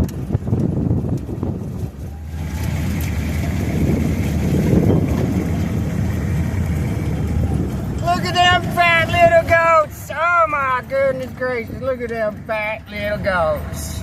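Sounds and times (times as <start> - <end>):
strong wind buffeting microphone: 0.0 - 10.4.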